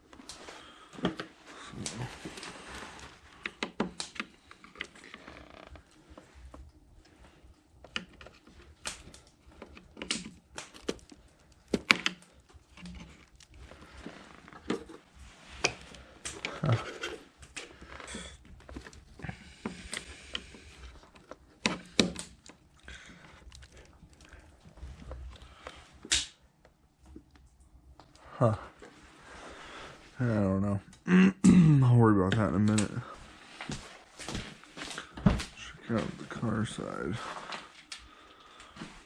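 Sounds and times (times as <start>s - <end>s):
plastic clicks and rustling: 0.1s - 28.2s.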